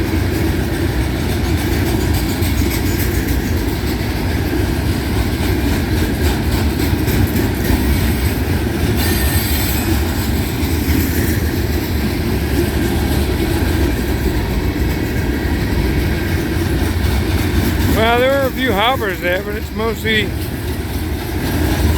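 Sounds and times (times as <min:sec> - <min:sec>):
freight train rumbling past: 0:00.0 - 0:21.9
wheels clattering on rails: 0:00.0 - 0:21.9.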